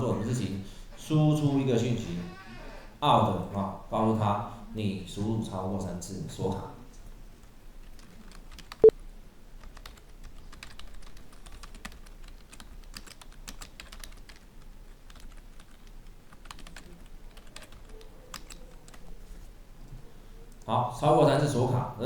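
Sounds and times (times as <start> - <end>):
keyboard typing clicks: 8.0 - 8.9, 9.6 - 14.4, 15.1 - 19.1.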